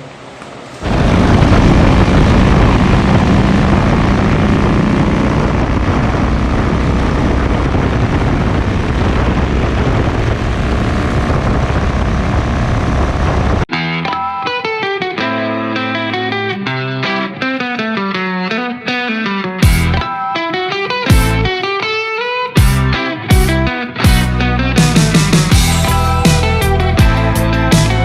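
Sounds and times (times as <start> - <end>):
motorcycle engine roaring: 0.8 - 13.7, 24.1 - 28.0.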